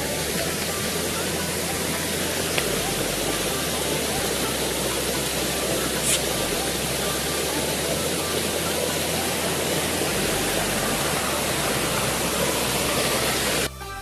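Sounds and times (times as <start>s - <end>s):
waterfall rushing: 0.0s - 13.7s.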